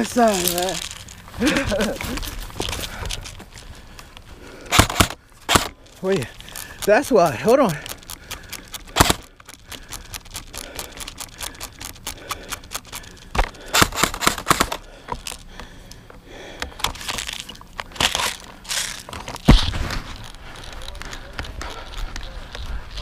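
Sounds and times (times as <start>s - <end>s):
gear rustling and clicking: 0.0s - 23.0s.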